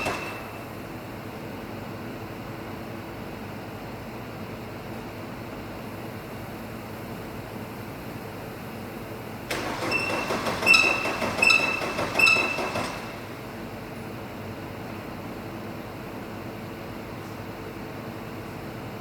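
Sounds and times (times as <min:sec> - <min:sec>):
diesel engine cranking: 0:00.0 - 0:00.8, 0:09.5 - 0:13.7.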